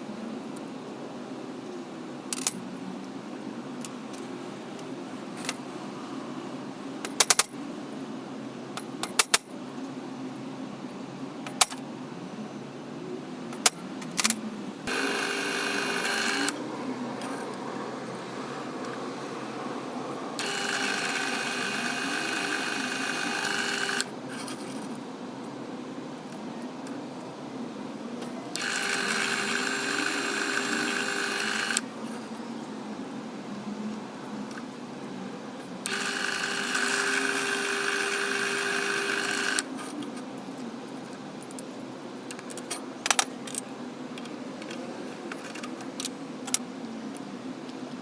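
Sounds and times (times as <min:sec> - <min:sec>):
small electric motor whine: 0:14.9 - 0:16.6, 0:20.4 - 0:24.1, 0:28.5 - 0:31.9, 0:35.8 - 0:39.7.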